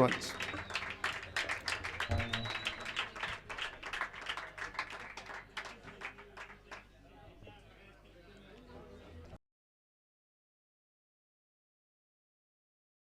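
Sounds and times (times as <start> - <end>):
audience applauding: 0.0 - 6.9.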